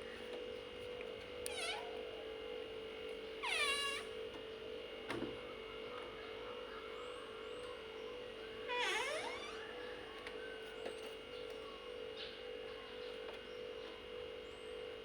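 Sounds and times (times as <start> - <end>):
faint steady hum: 0.0 - 15.0
squeaky door hinges creaking: 1.5 - 1.9, 3.4 - 4.1, 8.7 - 9.7.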